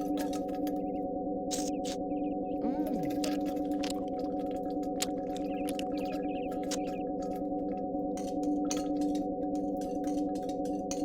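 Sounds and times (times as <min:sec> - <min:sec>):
low synthetic drone with flutter: 0:00.0 - 0:10.2.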